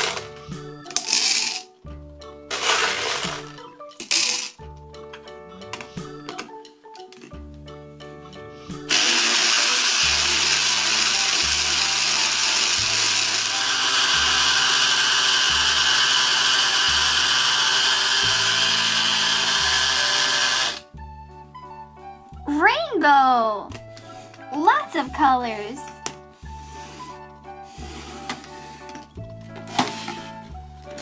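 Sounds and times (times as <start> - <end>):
children's music with bass line: 0.0 - 31.0
loud motor whir: 8.9 - 20.9.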